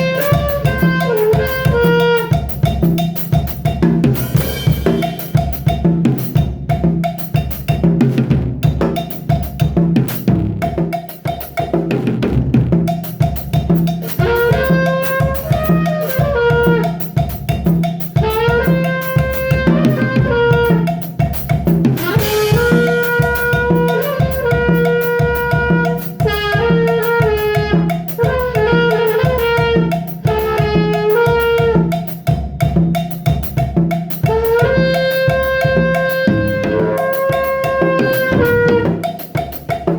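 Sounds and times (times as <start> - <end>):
drum kit beat: 0.0 - 39.9
held pitched lead melody: 35.4 - 39.2.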